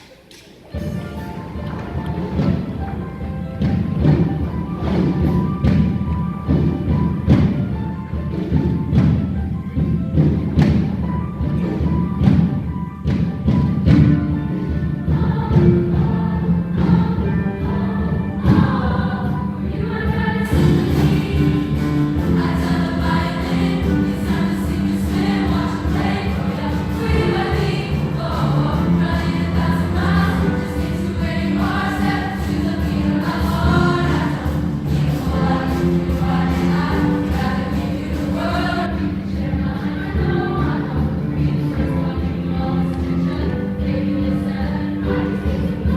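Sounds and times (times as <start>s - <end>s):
instrumental accompaniment: 0.0s - 45.9s
choir singing in parts: 13.9s - 45.9s.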